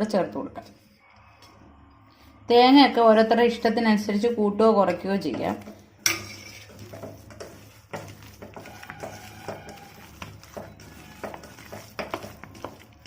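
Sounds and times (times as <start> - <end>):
spoon scraping against a bowl: 5.7 - 13.0.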